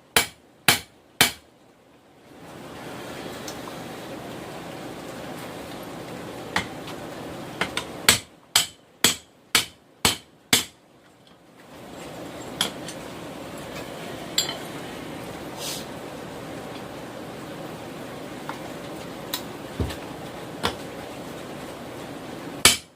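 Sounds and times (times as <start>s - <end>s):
background hiss: 0.0s - 22.9s
hammer striking metal on anvil: 0.2s - 1.4s, 7.7s - 10.8s, 22.6s - 22.9s.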